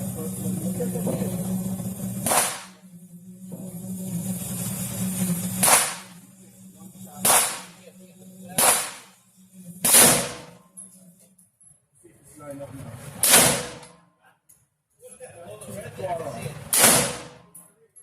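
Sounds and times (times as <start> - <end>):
pistol gunshots: 2.2 - 2.7, 5.6 - 6.0, 7.3 - 7.7, 8.6 - 9.0, 9.9 - 10.5, 13.2 - 13.8, 16.7 - 17.4.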